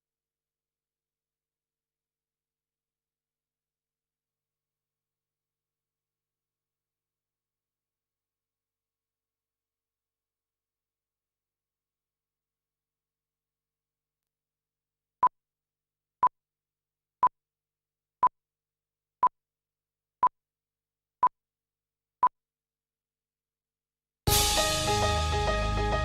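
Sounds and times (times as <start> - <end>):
music: 24.3 - 26.0.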